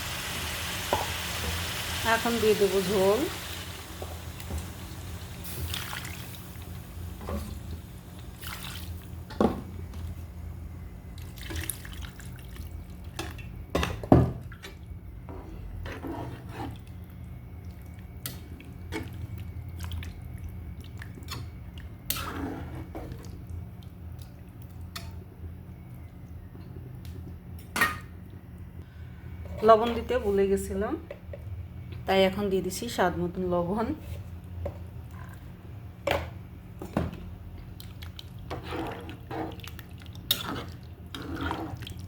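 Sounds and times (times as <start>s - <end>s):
water pouring into a pot: 5.0s - 6.8s, 8.3s - 9.1s, 11.2s - 12.8s
splashes and drips: 5.6s - 6.4s, 8.4s - 9.1s, 11.2s - 13.2s, 18.6s - 21.9s.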